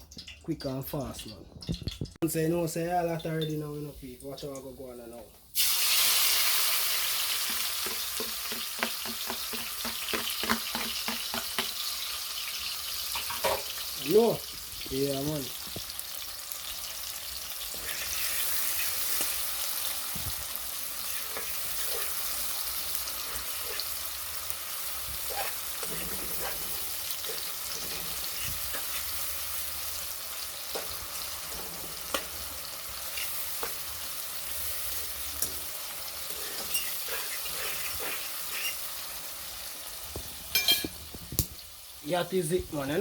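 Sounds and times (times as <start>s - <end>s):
food sizzling in hot oil: 3.0s - 43.0s
spoon stirring in pot: 7.4s - 11.8s, 21.0s - 24.2s, 24.8s - 29.9s, 30.6s - 34.1s, 35.4s - 38.9s.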